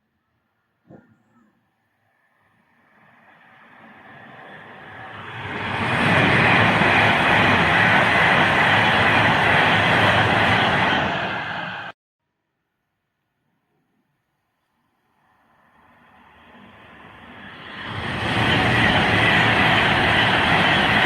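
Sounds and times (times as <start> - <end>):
train passing by: 2.4 - 12.0, 15.4 - 21.0.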